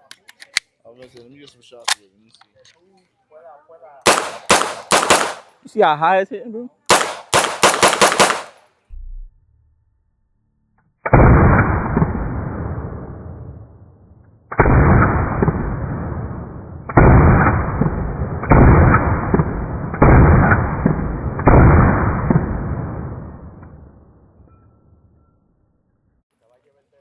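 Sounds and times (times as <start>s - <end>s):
gunshot volleys: 4.1s - 5.5s, 6.9s - 8.6s.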